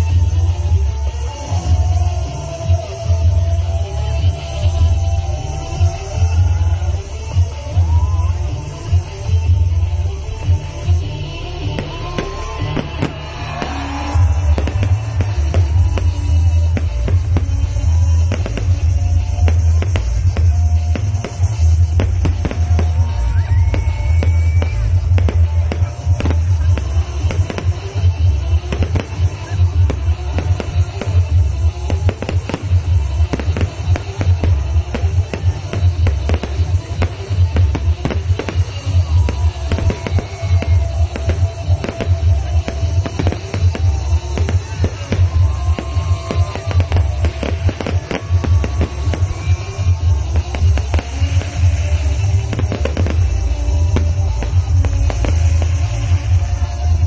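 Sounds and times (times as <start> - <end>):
loud music: 0.0 - 57.0
rising firework whistle: 11.4 - 57.0
fireworks bangs and cracks: 11.6 - 57.0.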